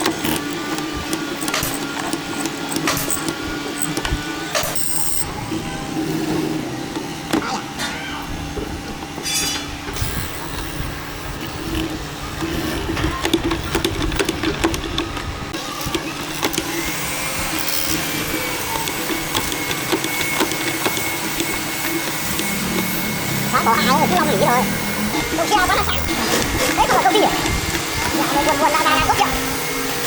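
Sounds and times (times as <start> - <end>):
knocks and clicks: 0.0 - 5.3, 9.9 - 26.8
machine low hum: 0.0 - 28.6.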